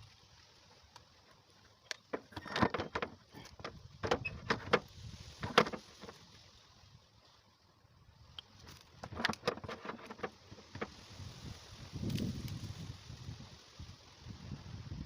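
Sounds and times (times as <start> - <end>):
sharp clicks and knocks: 1.8 - 6.2, 8.4 - 11.0.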